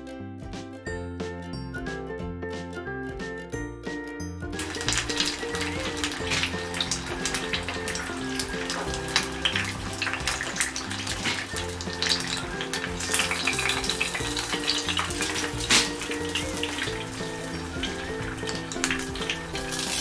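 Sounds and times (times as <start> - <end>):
background music: 0.0 - 20.0
food deep-frying in oil: 4.6 - 20.0
oil popping: 4.6 - 20.0.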